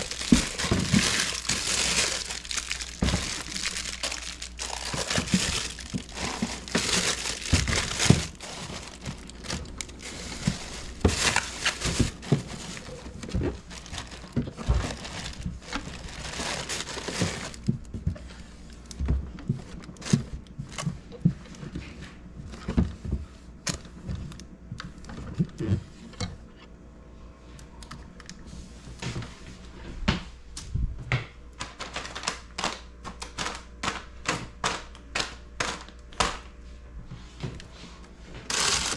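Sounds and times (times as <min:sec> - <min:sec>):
plastic packaging crinkling: 0:00.0 - 0:17.9, 0:38.5 - 0:38.9
items clicking and knocking: 0:00.0 - 0:18.2.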